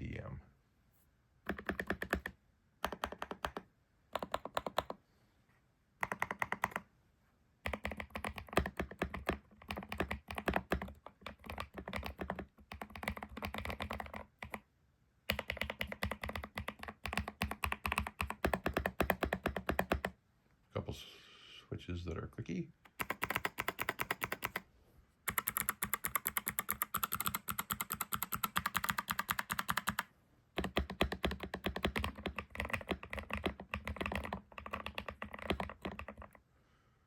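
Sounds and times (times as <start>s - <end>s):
mechanical keyboard typing: 1.4s - 5.0s, 6.0s - 6.8s, 7.6s - 14.6s, 15.3s - 20.1s, 22.9s - 24.6s, 25.3s - 36.4s.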